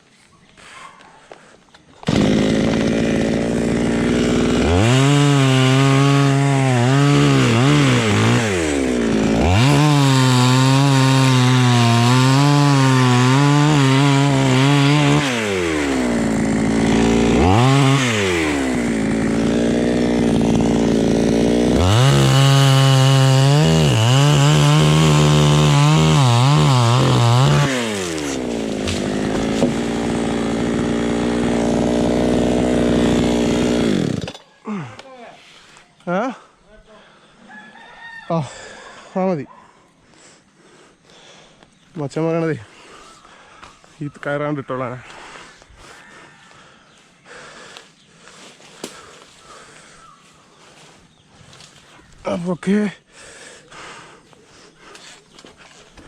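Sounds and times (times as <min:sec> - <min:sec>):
chainsaw cutting wood: 0:01.9 - 0:35.1, 0:47.3 - 0:49.8.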